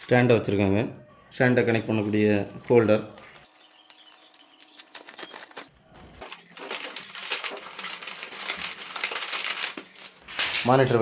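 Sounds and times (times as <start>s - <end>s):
packing material crinkling: 3.2s - 10.3s.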